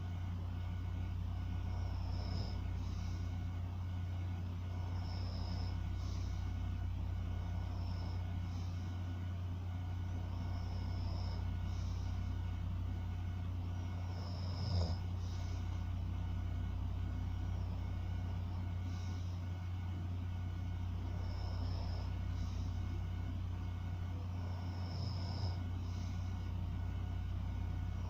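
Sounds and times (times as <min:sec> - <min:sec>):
steady low hum: 0:00.0 - 0:28.0
person snoring lightly: 0:01.5 - 0:03.3, 0:04.6 - 0:06.7, 0:07.3 - 0:08.9, 0:10.0 - 0:12.2, 0:13.8 - 0:15.8, 0:20.9 - 0:23.0, 0:24.3 - 0:26.5.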